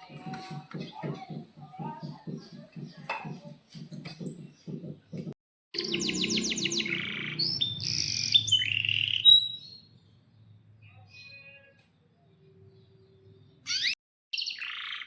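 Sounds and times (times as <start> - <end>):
canary singing: 5.8 - 15.0.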